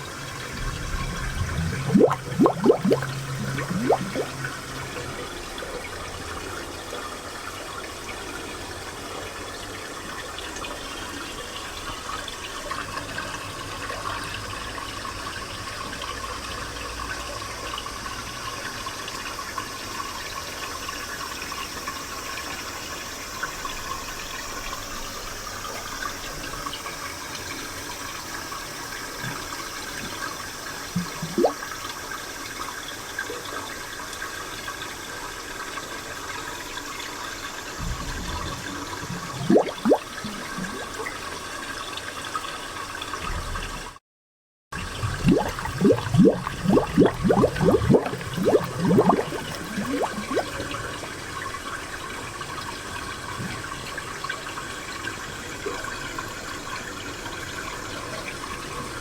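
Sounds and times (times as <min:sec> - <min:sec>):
water gurgling and bubbling: 0:00.0 - 0:05.4, 0:29.2 - 0:31.6, 0:37.8 - 0:41.2, 0:44.8 - 0:51.0
spring water trickling: 0:00.0 - 0:06.9, 0:28.0 - 0:31.8, 0:37.6 - 0:41.5, 0:44.8 - 0:51.0.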